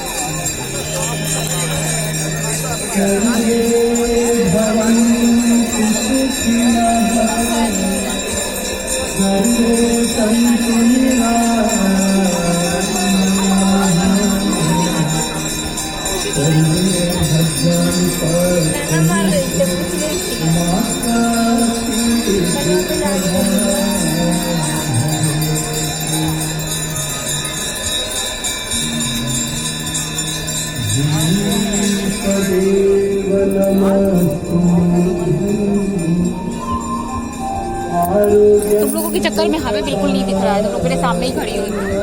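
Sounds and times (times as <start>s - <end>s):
jingling bells: 0.0s - 42.0s
person singing: 30.8s - 42.0s.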